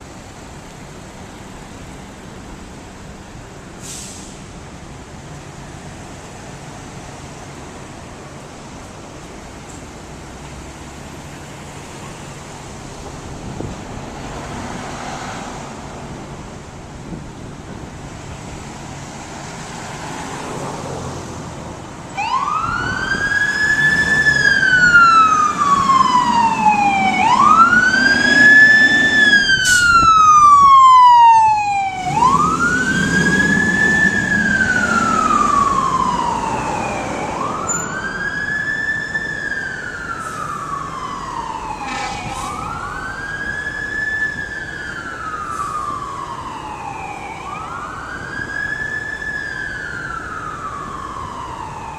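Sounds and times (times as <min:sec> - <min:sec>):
fire engine siren wailing: 0:22.0 - 0:51.9.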